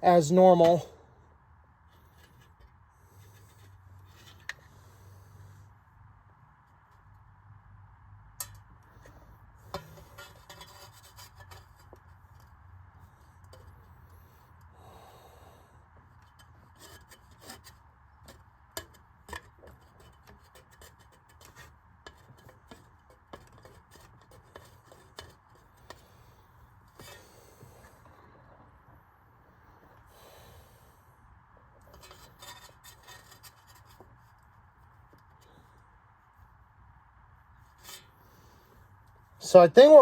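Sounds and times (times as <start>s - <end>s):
hands rubbing and scraping fan blade: 9.0s - 12.5s, 16.2s - 28.1s, 31.8s - 36.6s, 37.5s - 40.0s.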